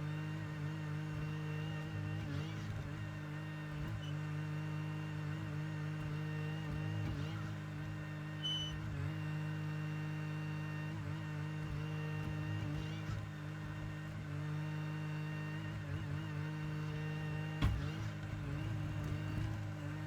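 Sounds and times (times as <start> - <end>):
excavator diesel engine: 0.0 - 20.0
high squeak: 8.4 - 8.8.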